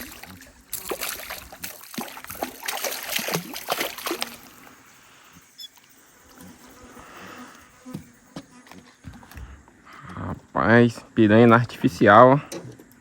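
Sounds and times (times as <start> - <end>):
water splashing and trickling: 0.0 - 5.3.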